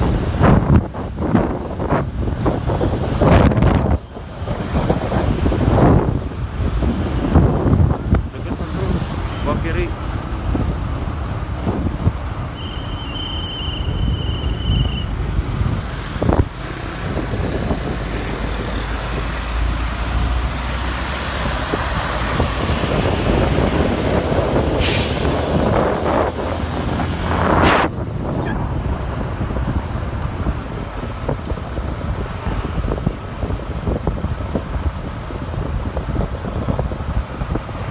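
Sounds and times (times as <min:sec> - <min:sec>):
buses and traffic passing: 0:00.0 - 0:37.9
loud air hiss: 0:24.7 - 0:26.2.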